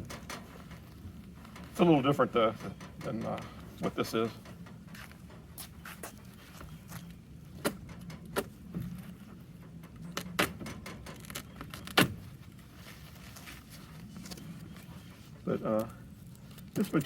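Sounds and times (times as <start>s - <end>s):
sharp clicks and knocks: 0.0s - 12.3s
low steady hum: 0.0s - 17.0s.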